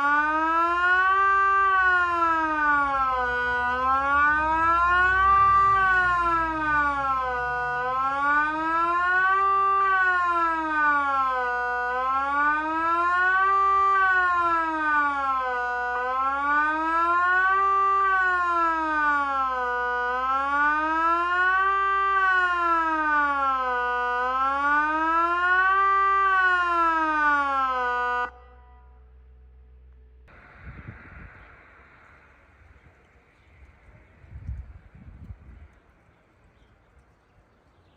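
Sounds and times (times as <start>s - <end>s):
wailing civil-defence siren: 0.0s - 33.0s
faint low rumble: 28.3s - 37.6s.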